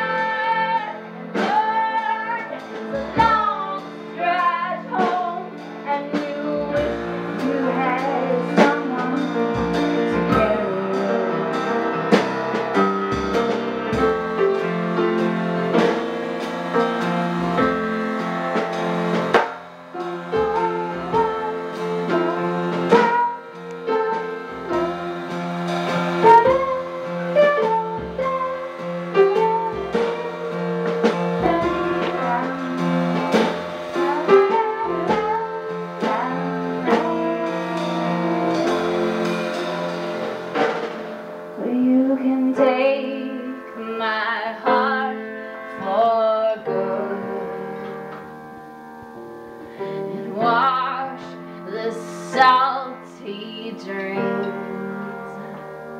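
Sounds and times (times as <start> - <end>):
live band guitar: 0.0 - 42.2
drums: 0.0 - 55.9.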